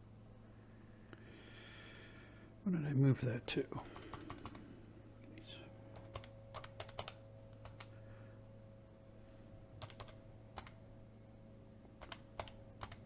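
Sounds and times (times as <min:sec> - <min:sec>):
low electrical hum: 0:00.0 - 0:13.0
keyboard key clicks: 0:12.0 - 0:13.0.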